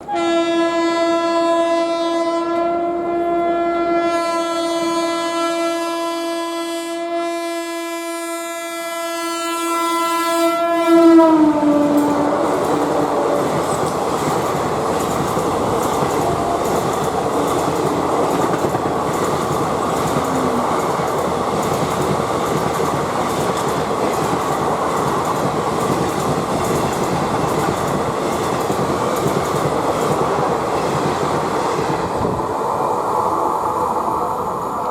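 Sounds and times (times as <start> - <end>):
locomotive horn blast: 0.0 - 14.0, 15.4 - 21.4
train wheels rushing past: 10.4 - 34.9
wheels clacking over rail joints: 11.3 - 32.3.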